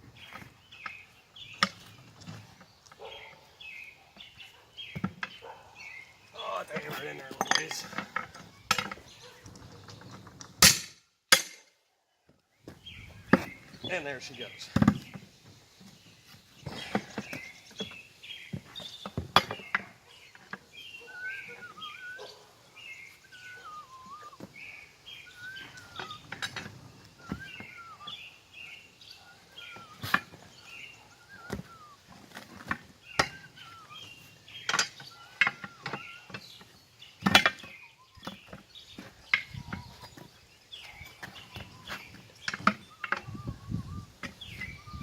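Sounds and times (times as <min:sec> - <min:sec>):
songbird warbling and chirping: 0:00.0 - 0:10.6, 0:12.0 - 0:45.0
steel tools clanking on wheel: 0:06.6 - 0:11.7, 0:22.8 - 0:28.2, 0:29.4 - 0:40.2, 0:40.8 - 0:43.4.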